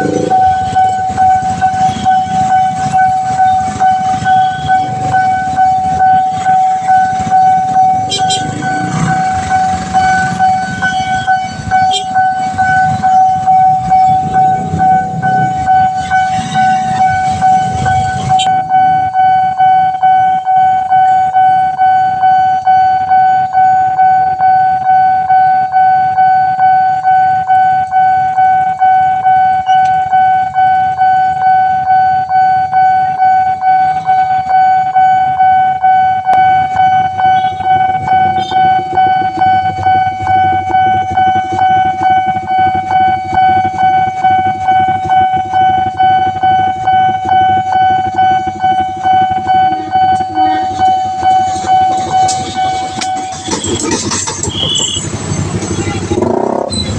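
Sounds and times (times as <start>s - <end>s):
level crossing siren pulsing: 0.0s - 56.9s
train rumbling past: 48.0s - 56.9s.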